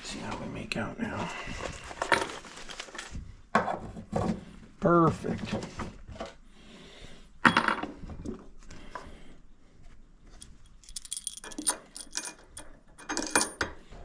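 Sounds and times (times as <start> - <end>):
small metal parts clinking: 10.3 - 13.7.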